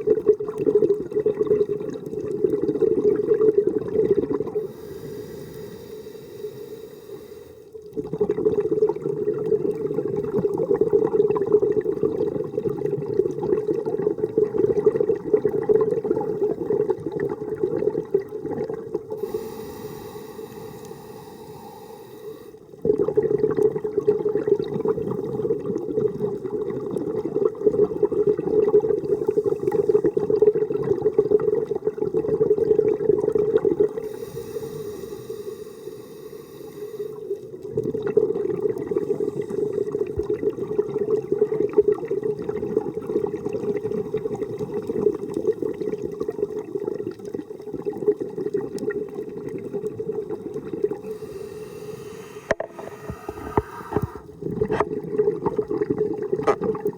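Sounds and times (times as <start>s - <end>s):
muffled underwater churning: 0.0s - 56.9s.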